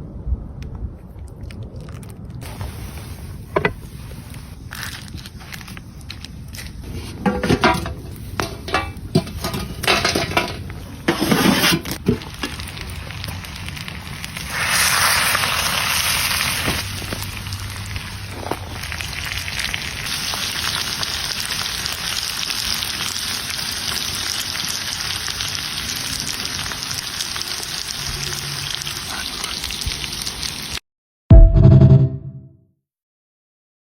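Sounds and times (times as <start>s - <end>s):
food sizzling: 2.4s - 30.8s.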